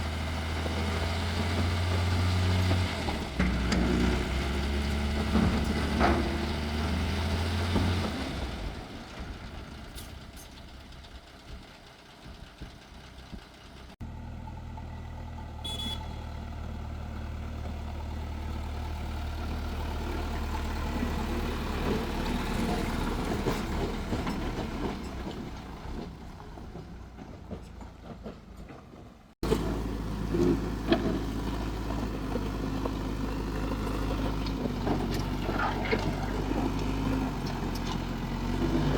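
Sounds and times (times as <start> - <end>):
excavator diesel engine running: 0.0 - 38.9
high beep: 15.7 - 16.1.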